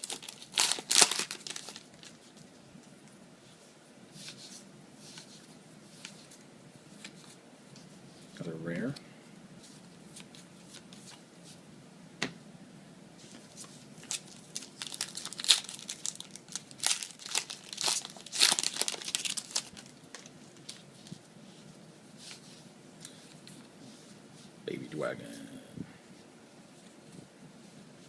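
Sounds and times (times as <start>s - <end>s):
wrapper crinkling and tearing: 0.0s - 2.3s, 14.0s - 20.8s.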